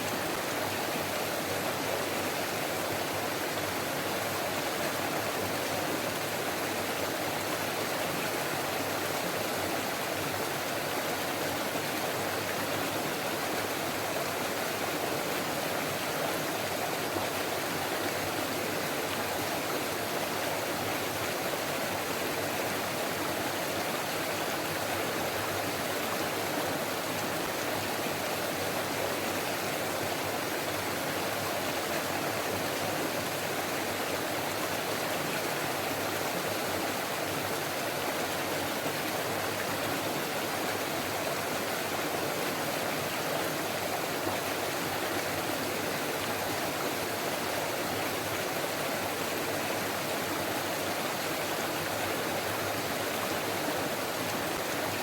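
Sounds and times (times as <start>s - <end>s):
stream flowing: 0.0s - 55.0s.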